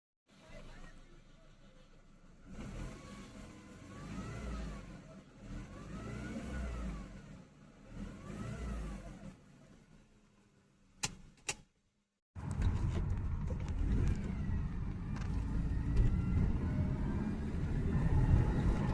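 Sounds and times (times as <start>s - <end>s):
car engine revving: 2.4s - 10.0s, 12.4s - 18.9s.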